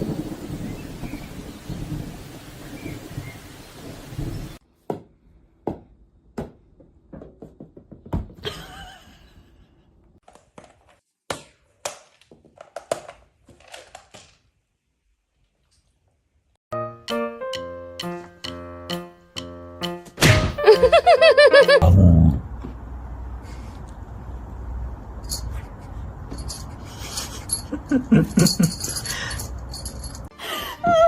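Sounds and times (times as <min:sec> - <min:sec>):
rain hiss: 0:00.0 - 0:04.6
irregular knocks and thunks: 0:04.9 - 0:08.5
music: 0:16.7 - 0:21.8.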